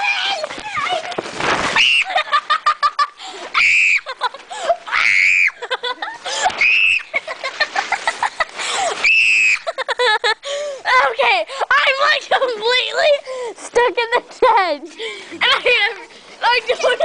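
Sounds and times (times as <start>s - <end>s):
people laughing: 2.0s - 3.2s, 4.0s - 4.8s, 5.6s - 9.0s, 9.6s - 10.4s
people screaming: 3.5s - 4.1s, 4.9s - 5.6s, 6.5s - 7.1s, 9.0s - 9.7s.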